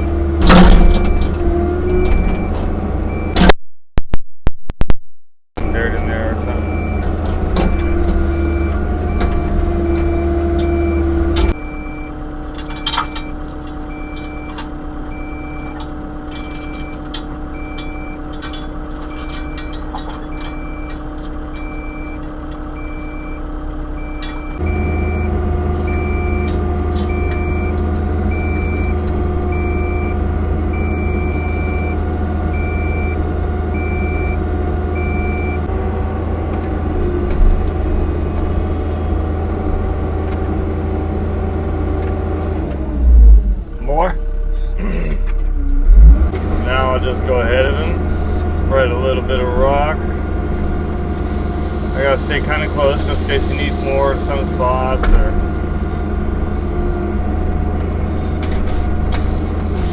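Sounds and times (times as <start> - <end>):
diesel engine running: 0.0 - 3.5, 5.6 - 59.9
backup alarm beeping: 0.4 - 3.5, 5.6 - 12.2, 19.0 - 35.7, 38.1 - 57.1.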